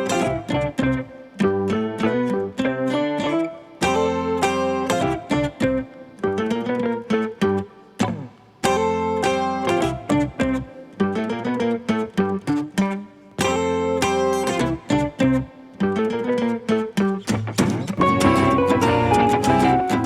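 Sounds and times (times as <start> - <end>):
acoustic guitar picking: 0.0 - 20.0.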